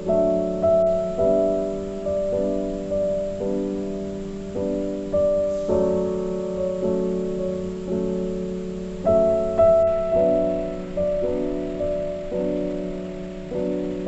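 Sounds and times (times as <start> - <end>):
soft piano chords: 0.0 - 14.0.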